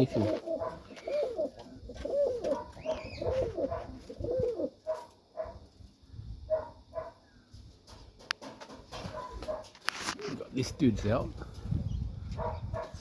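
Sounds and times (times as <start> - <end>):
pigeons cooing: 0.0 - 5.7.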